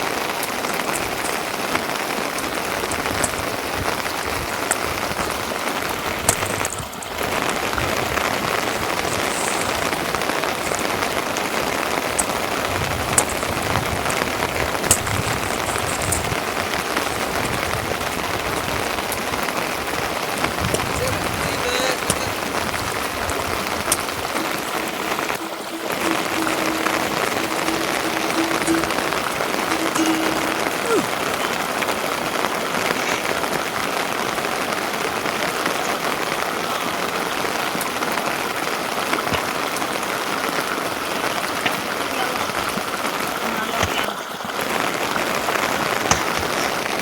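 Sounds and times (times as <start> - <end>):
steady rain falling: 0.0 - 47.0.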